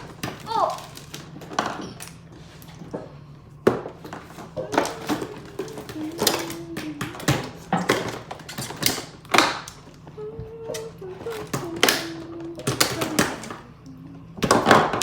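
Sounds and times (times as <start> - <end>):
plastic toys clicking and rustling: 0.0 - 2.3, 4.2 - 10.0, 10.6 - 13.7.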